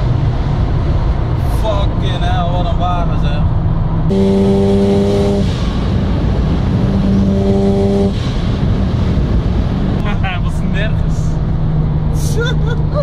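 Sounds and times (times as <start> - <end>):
engine and road rumble: 0.0 - 13.0
car engine revving high: 4.1 - 10.0.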